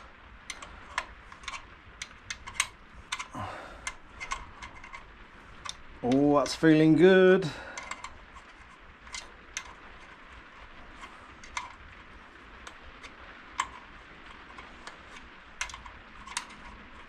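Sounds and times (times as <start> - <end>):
light metallic clicks of bolt: 0.0 - 6.6, 14.4 - 17.0.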